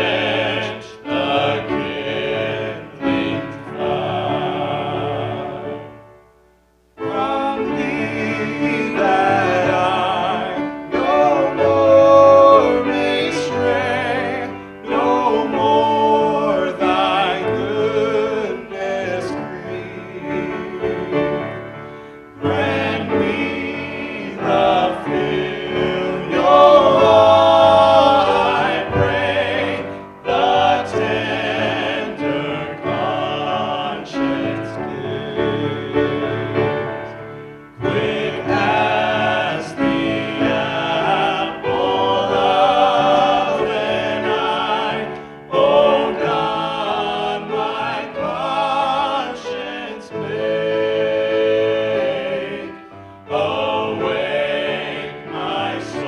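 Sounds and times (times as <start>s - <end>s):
vocal group singing a hymn: 0.0s - 6.2s, 7.0s - 56.0s.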